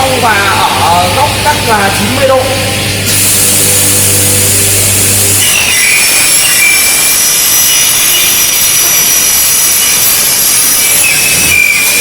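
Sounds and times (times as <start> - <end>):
saw blades screeching in metal: 5.3 - 12.0.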